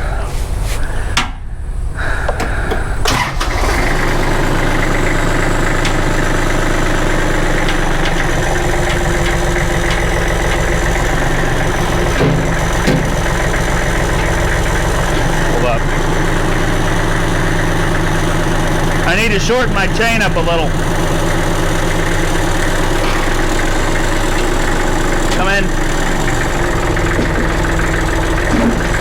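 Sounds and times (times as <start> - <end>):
loader engine running: 0.0 - 29.0
knocks: 11.9 - 14.8.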